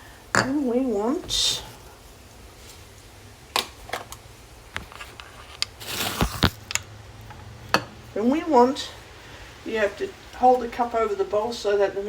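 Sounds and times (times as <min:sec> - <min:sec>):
short rustle: 0:04.8 - 0:06.6.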